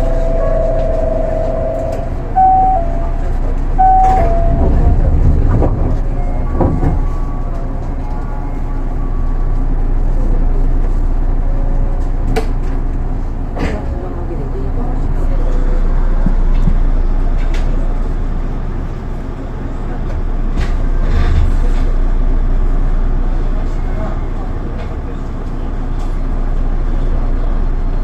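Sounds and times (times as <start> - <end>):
short electronic beeps: 0.0 - 5.0
steady low hum: 0.0 - 11.7
train low rumble: 0.0 - 28.0.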